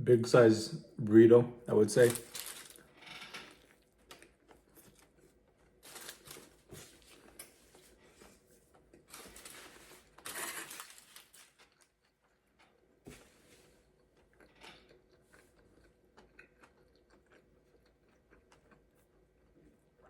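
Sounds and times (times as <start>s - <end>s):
eating noises: 13.6s - 20.0s.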